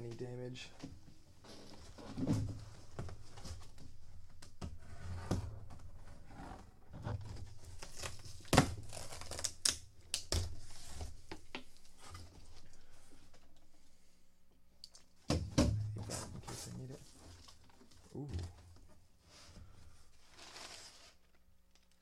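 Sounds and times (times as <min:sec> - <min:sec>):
packing paper crinkling: 0:07.6 - 0:10.9
tape tearing: 0:07.6 - 0:11.0, 0:20.3 - 0:22.0
cardboard flaps scraping: 0:20.2 - 0:21.3.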